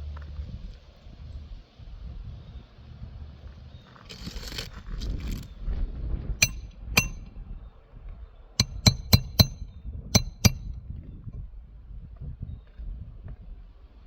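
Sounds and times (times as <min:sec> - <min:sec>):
metal scrape: 0:04.0 - 0:05.5
hammer striking metal tool: 0:06.4 - 0:07.4, 0:08.6 - 0:10.7.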